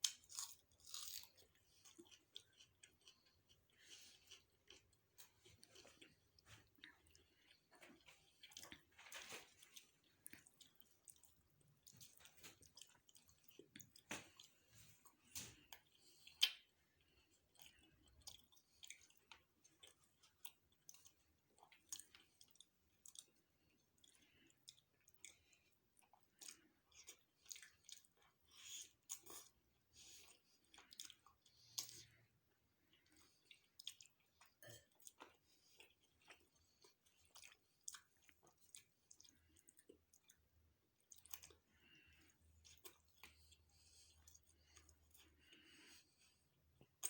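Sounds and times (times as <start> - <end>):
person chewing: 0.0 - 47.0.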